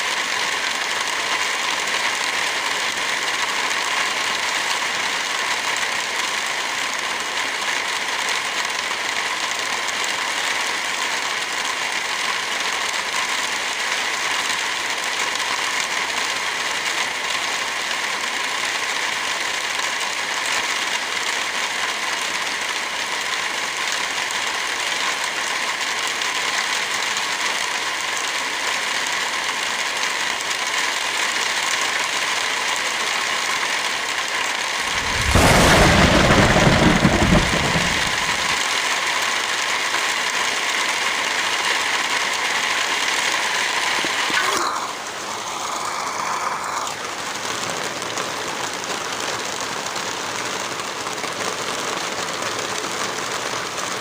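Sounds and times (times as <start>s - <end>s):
heavy rain hissing: 34.8s - 38.8s, 43.4s - 47.8s.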